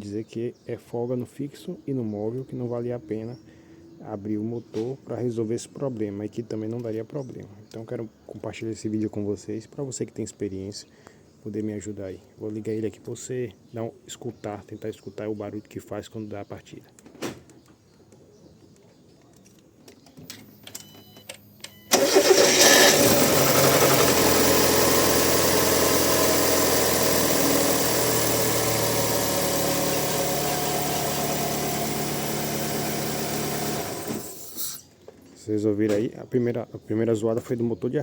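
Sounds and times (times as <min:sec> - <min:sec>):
car engine idling: 0:21.9 - 0:34.4
brief engine noise on start: 0:21.9 - 0:34.8
car starter cranking: 0:21.9 - 0:34.8.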